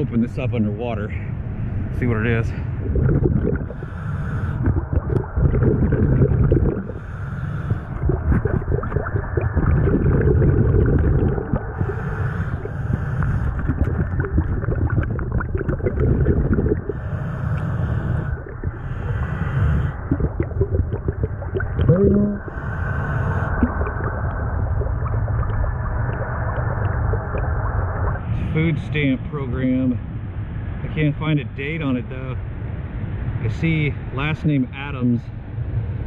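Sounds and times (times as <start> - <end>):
low rumble of water: 0.0 - 36.0
underwater exhaled bubbles: 2.5 - 28.6.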